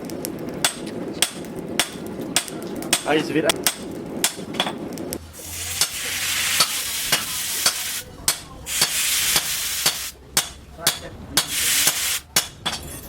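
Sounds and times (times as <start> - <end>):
loud hiss: 5.2 - 10.2, 11.4 - 12.3
hammer blows on anvil: 5.8 - 12.8.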